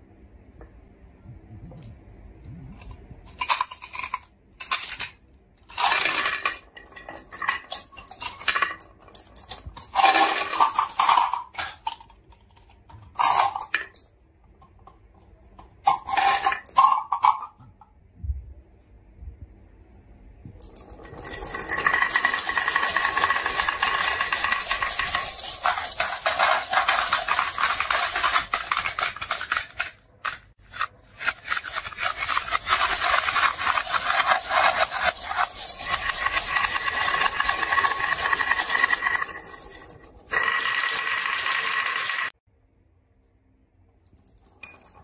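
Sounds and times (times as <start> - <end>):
marbles rattling down a track: 3.4 - 12.1, 20.6 - 30.5, 31.2 - 42.4.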